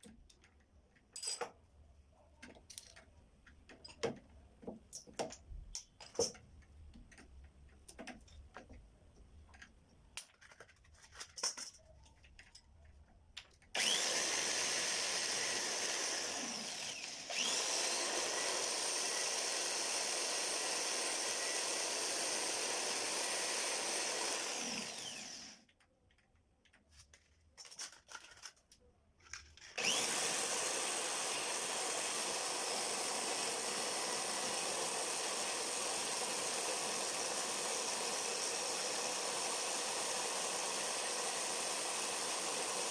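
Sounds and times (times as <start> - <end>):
handheld power tool running: 13.8 - 25.7, 29.8 - 42.9.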